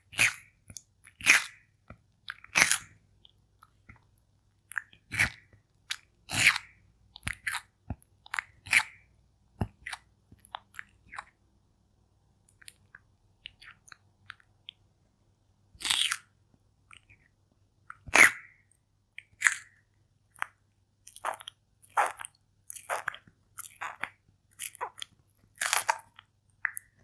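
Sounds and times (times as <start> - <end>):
turtle crunching food: 0.0 - 11.4, 19.2 - 27.0.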